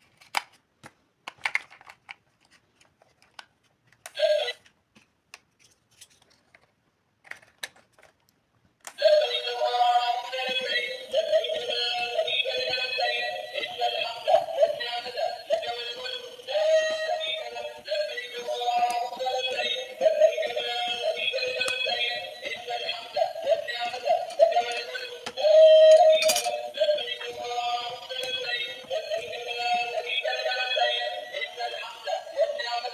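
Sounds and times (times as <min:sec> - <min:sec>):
music with high-pitched melody: 0:09.0 - 0:32.9.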